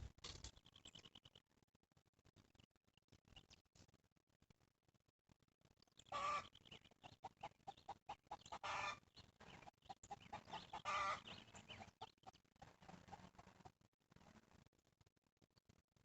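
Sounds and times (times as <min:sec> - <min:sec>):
chicken calling: 0:06.1 - 0:06.6, 0:08.1 - 0:13.6.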